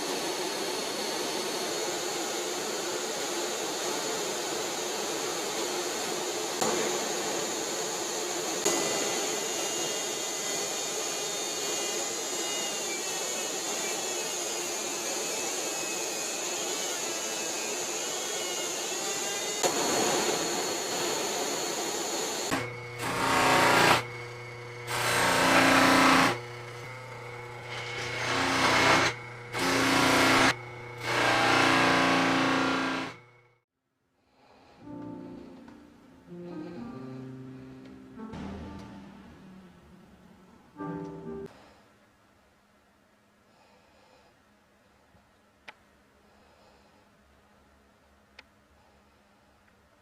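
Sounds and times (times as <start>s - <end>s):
power tool whirring: 0.0s - 33.6s.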